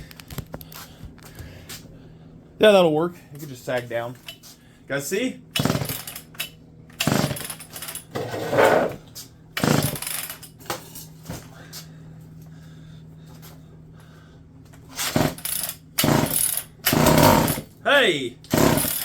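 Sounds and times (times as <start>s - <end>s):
chainsaw starter cord pulls: 5.6s - 9.0s, 9.6s - 10.4s, 15.0s - 17.7s, 18.5s - 19.0s.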